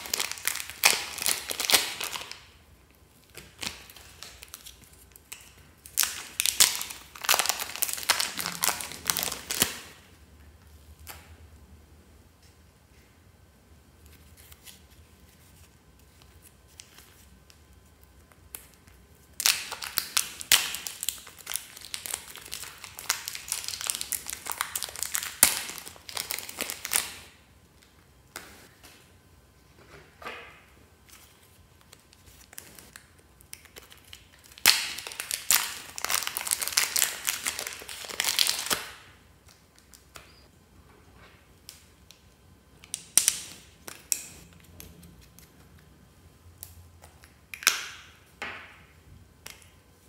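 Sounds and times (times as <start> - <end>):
slime crackling and popping: 0.0 - 2.5, 3.3 - 10.0, 18.5 - 27.3, 32.0 - 40.0.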